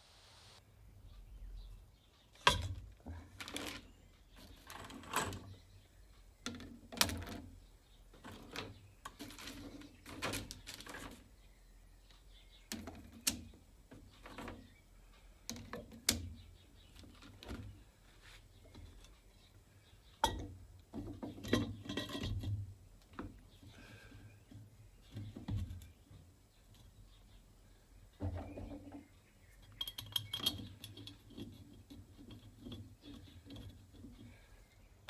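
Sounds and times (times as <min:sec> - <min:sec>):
knocks and clunks: 0:28.2 - 0:29.1.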